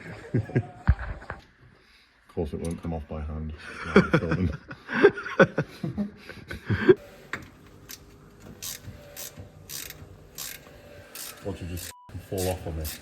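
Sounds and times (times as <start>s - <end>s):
person laughing: 0.0s - 1.3s, 3.6s - 7.0s
ratchet wrench clicking: 7.9s - 13.0s.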